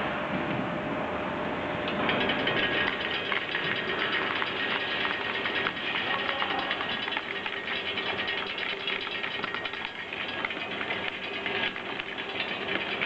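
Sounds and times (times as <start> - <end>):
machine clattering: 1.9 - 13.0.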